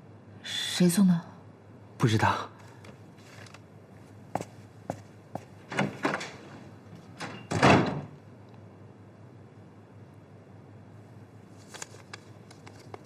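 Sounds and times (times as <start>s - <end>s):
door shutting: 5.6s - 8.2s.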